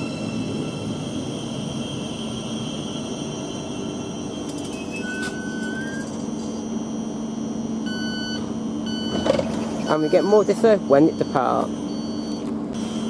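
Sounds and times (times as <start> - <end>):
train equipment humming with whine: 0.0 - 13.0
electronic tone: 1.8 - 13.0
short beep: 4.6 - 6.7, 7.9 - 10.5, 11.1 - 13.0.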